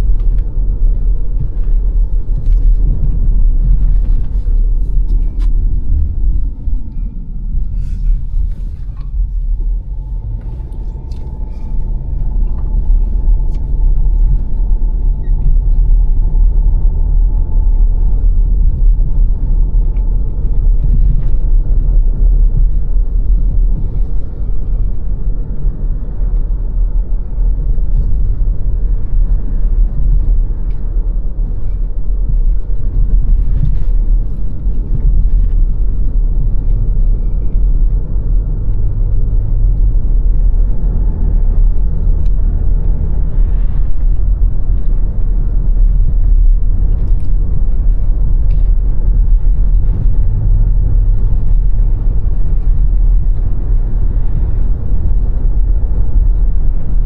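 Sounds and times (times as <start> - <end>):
car engine and road noise: 0.0 - 57.0.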